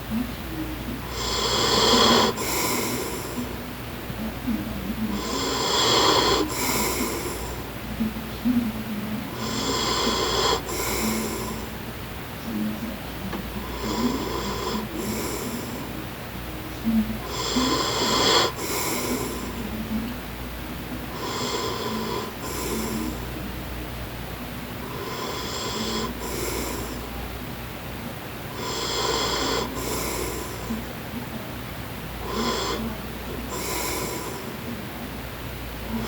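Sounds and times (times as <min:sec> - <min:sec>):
breathy hiss: 0:00.9 - 0:03.7, 0:04.4 - 0:07.9, 0:09.3 - 0:19.9, 0:21.0 - 0:23.5, 0:24.8 - 0:27.3, 0:28.5 - 0:31.3, 0:32.0 - 0:35.0, 0:35.6 - 0:36.0
man snoring: 0:01.1 - 0:03.5, 0:05.2 - 0:07.6, 0:09.4 - 0:11.7, 0:13.6 - 0:15.9, 0:17.3 - 0:19.5, 0:21.2 - 0:23.2, 0:24.9 - 0:27.1, 0:28.6 - 0:30.8, 0:32.2 - 0:34.5.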